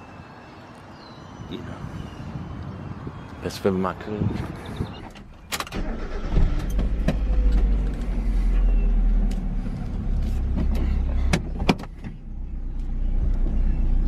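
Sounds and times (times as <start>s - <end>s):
car engine running: 5.8s - 14.0s.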